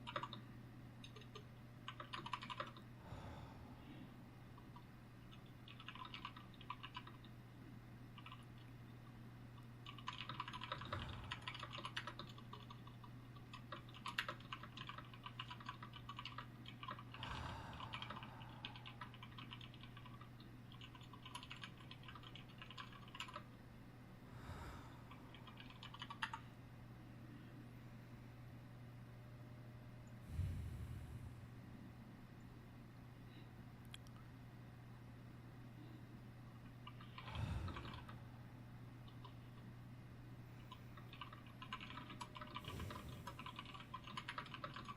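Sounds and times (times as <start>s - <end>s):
keyboard typing: 0.0s - 2.9s, 4.6s - 7.3s, 8.2s - 8.7s, 9.6s - 23.5s, 25.1s - 26.4s, 36.8s - 38.1s, 40.6s - 44.9s
soft breaths: 2.7s - 5.0s, 9.6s - 12.0s, 17.0s - 19.6s, 24.2s - 28.3s, 30.1s - 32.0s, 33.2s - 33.8s, 35.6s - 39.8s, 41.8s - 44.4s
low hum: 2.8s - 5.7s, 23.5s - 41.0s, 42.1s - 44.6s.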